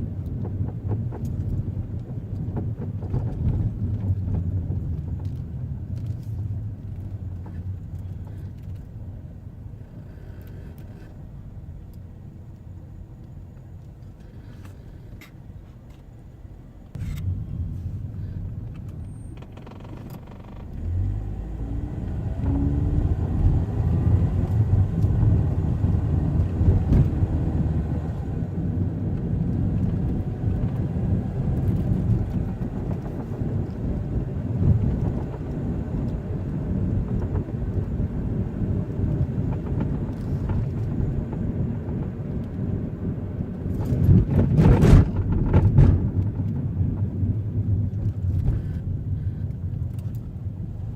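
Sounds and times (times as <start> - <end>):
road rumble: 0.0 - 50.9
car engine accelerating: 17.0 - 50.9.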